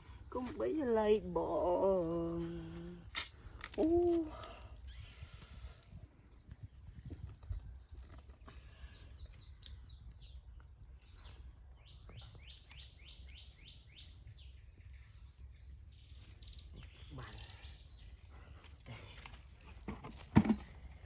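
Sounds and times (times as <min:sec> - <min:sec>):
bird chirping: 0:06.9 - 0:21.0.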